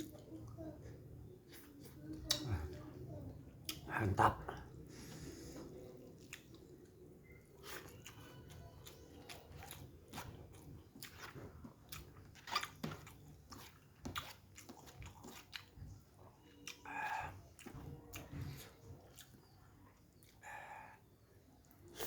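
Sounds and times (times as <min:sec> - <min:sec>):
person chewing and smacking: 0:01.5 - 0:03.0, 0:03.6 - 0:03.9, 0:05.6 - 0:20.4.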